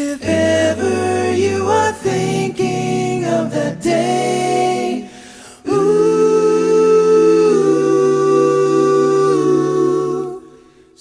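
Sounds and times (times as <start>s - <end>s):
a cappella vocal harmonies: 0.0s - 11.0s.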